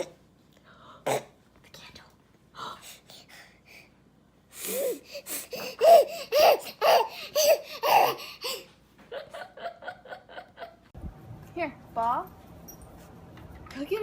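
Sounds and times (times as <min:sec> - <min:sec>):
baby laughing: 0:04.7 - 0:10.8.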